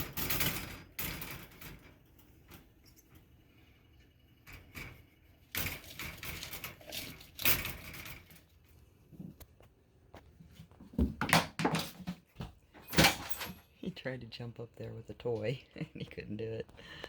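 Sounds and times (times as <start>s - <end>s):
toys clicking and rustling: 4.0s - 9.8s.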